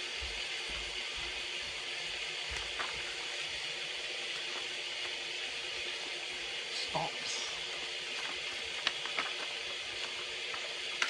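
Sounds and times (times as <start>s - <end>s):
rain falling: 2.4s - 11.0s.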